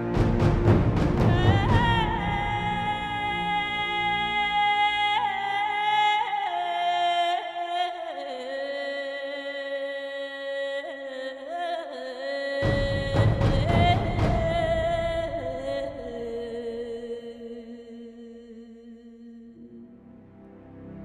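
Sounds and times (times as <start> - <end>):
low accompaniment: 0.0 - 4.8, 12.6 - 16.7.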